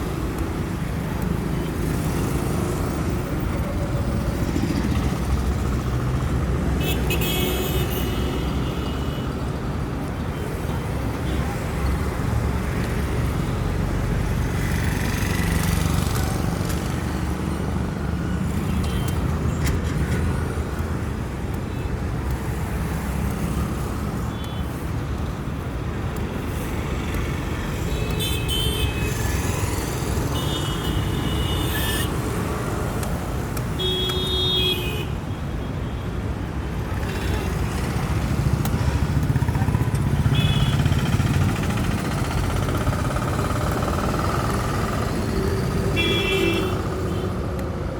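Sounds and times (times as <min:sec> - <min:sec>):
cars running: 0:00.0 - 0:34.4, 0:36.2 - 0:47.9
motorcycles running: 0:09.3 - 0:33.8, 0:36.4 - 0:47.6.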